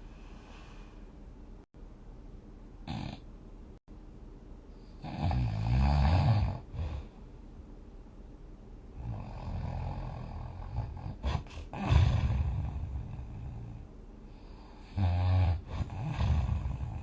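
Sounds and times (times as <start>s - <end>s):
person snoring: 2.8s - 3.2s, 5.0s - 7.2s, 9.0s - 13.8s, 14.4s - 17.0s.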